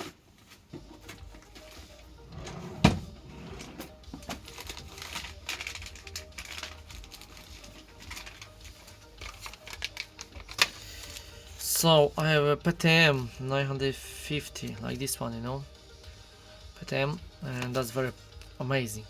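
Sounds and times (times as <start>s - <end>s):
small items clicking and rustling: 4.2s - 11.3s.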